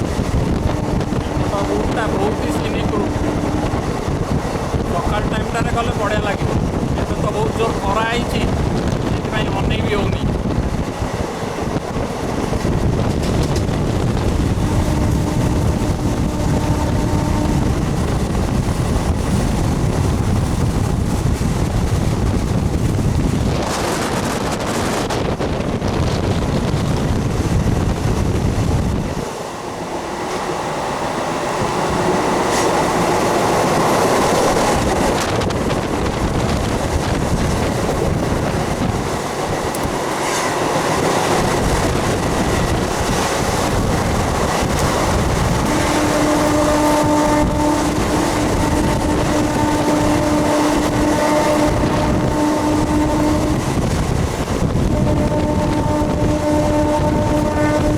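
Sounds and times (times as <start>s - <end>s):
wind noise: 0.0s - 29.5s, 30.2s - 57.9s
train wheels rumbling on track: 0.0s - 57.9s.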